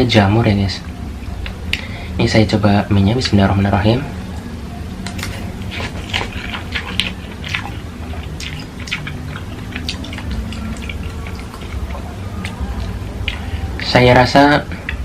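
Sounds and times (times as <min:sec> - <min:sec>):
person slurping and chewing noodles: 0:05.0 - 0:13.8.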